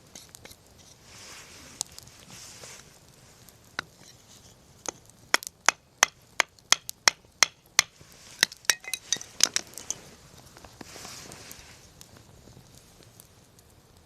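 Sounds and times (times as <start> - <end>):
firewood being chopped: 4.8 - 9.9.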